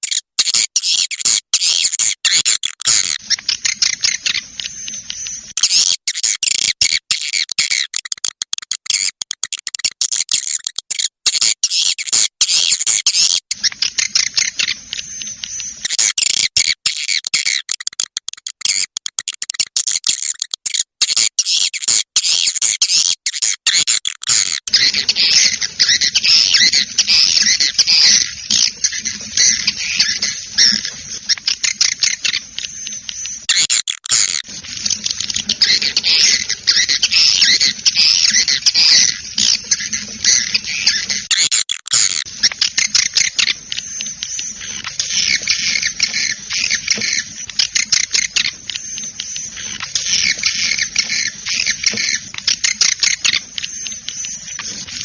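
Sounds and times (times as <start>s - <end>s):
swiftlets twittering: 23.4s - 55.0s.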